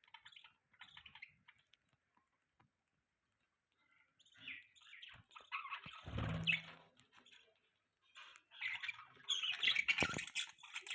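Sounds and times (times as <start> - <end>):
budgerigars chirping: 0.0 - 1.7, 4.2 - 7.4, 8.2 - 10.9.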